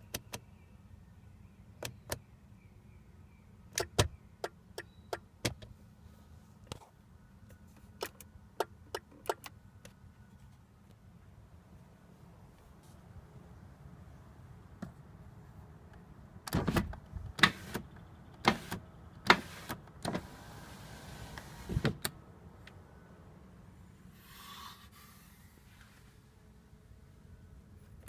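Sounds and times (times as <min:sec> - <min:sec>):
soft rustle: 0:11.7 - 0:13.3, 0:24.1 - 0:26.4.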